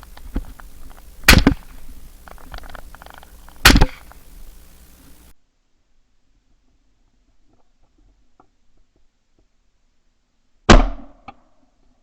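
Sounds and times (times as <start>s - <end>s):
faint clicks: 0.0s - 5.3s
shotgun shots: 0.0s - 5.3s.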